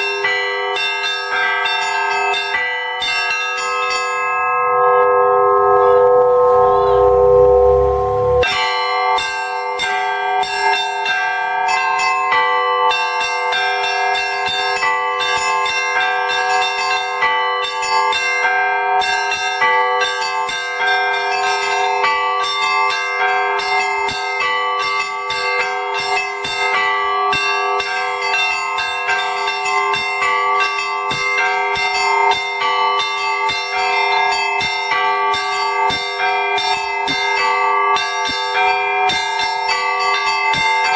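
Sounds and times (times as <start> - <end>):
church bells pealing: 0.0 - 40.9
low rumble: 5.6 - 8.6.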